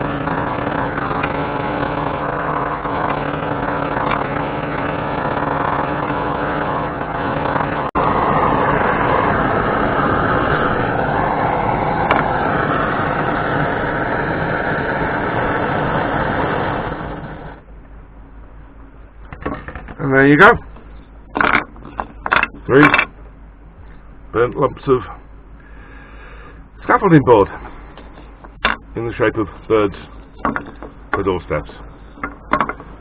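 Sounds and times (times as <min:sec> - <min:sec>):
blowtorch flame rushing: 0:00.0 - 0:17.6.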